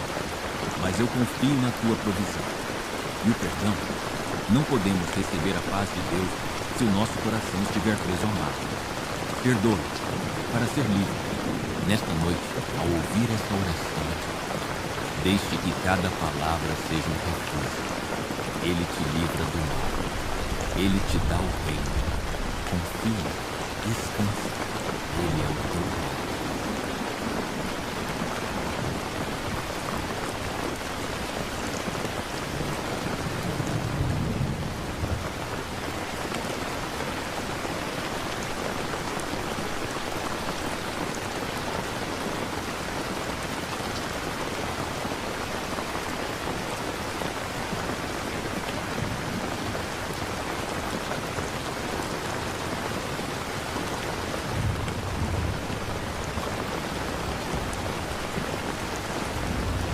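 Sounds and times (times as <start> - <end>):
steady rain falling: 0.0 - 59.9
low thunder rumbles: 19.4 - 23.8, 54.4 - 59.9.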